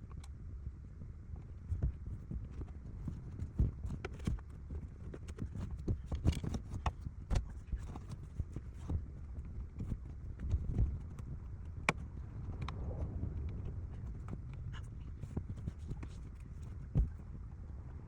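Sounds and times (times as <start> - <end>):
low rumble: 10.4 - 18.0.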